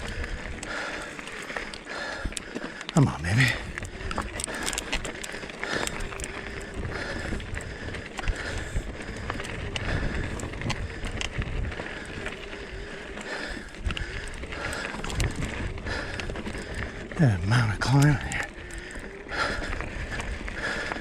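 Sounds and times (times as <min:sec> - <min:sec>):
tyres crunching over rock: 0:00.1 - 0:21.0.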